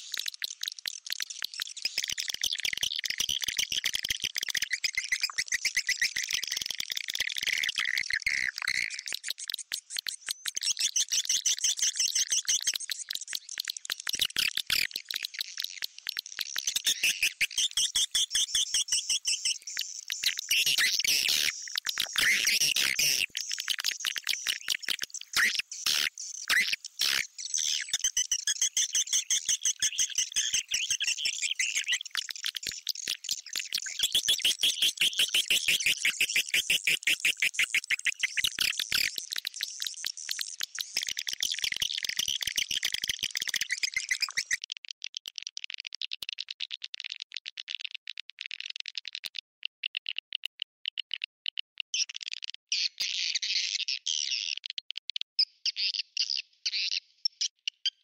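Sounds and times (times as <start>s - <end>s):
swiftlets chittering chirps: 16.7s - 39.1s.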